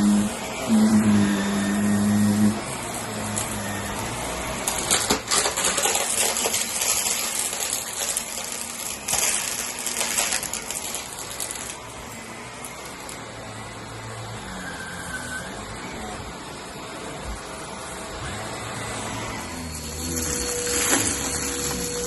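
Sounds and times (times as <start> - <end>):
vacuum cleaner running: 0.0 - 22.0
debris crackling in vacuum: 4.6 - 12.0, 19.8 - 22.0.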